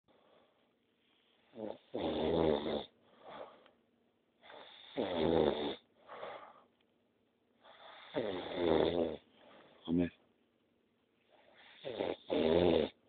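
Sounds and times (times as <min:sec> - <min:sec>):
quiet breath: 0:00.1 - 0:01.6, 0:02.9 - 0:03.8, 0:05.8 - 0:06.8, 0:09.2 - 0:09.9, 0:11.1 - 0:11.9
person snoring loudly: 0:01.6 - 0:02.9, 0:04.5 - 0:05.8, 0:08.0 - 0:09.2, 0:11.7 - 0:13.0.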